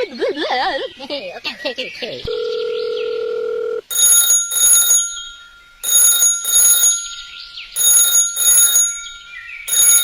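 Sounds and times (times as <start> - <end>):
telephone ringing: 2.3 - 7.2, 7.8 - 10.0.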